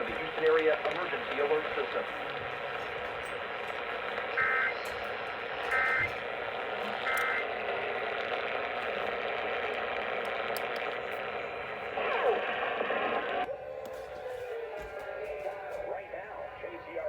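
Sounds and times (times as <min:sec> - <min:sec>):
radio hiss: 0:00.0 - 0:17.0
buzzy digital data squawk: 0:04.4 - 0:04.9, 0:05.7 - 0:06.2, 0:07.0 - 0:07.4.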